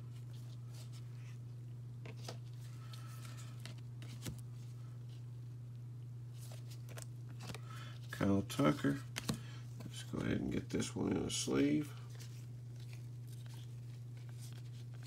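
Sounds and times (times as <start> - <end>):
steady low hum: 0.0 - 15.0
cards rustling and clicking: 2.0 - 5.2, 6.3 - 10.9, 11.6 - 15.0.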